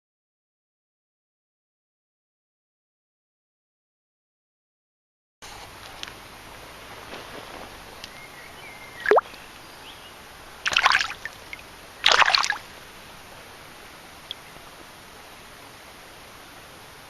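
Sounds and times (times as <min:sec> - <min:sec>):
river water running: 0:05.5 - 0:17.0
brief splashes: 0:09.0 - 0:09.3, 0:10.6 - 0:12.7.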